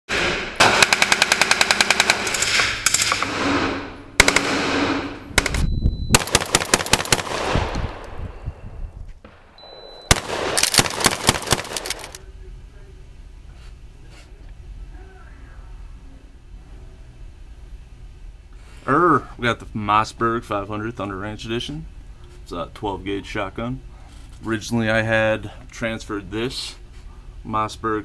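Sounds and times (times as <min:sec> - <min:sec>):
automatic gunfire: 0:00.1 - 0:08.0, 0:10.1 - 0:12.2.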